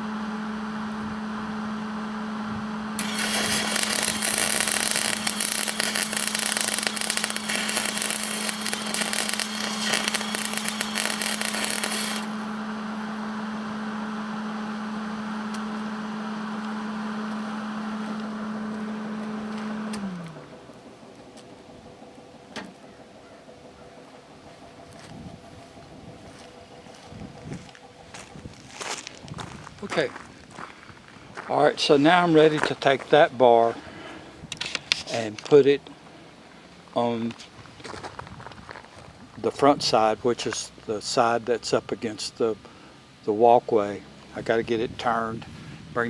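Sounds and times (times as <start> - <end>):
angle grinder motor whine: 0.0 - 23.2
disc grinding steel: 3.0 - 12.6.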